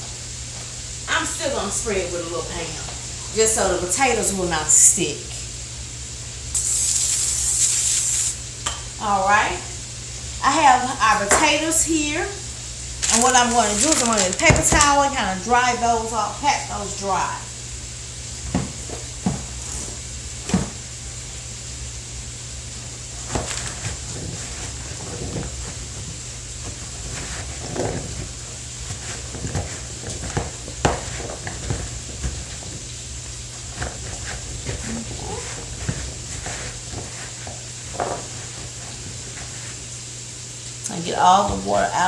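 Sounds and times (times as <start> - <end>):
background hum and hiss: 0.0 - 42.0
meat sizzling in a skillet: 6.5 - 8.6
paper towel rustling: 11.0 - 15.6, 18.3 - 21.3, 22.6 - 42.0
kitchen knocks and clunks: 14.3 - 15.0, 18.5 - 20.8.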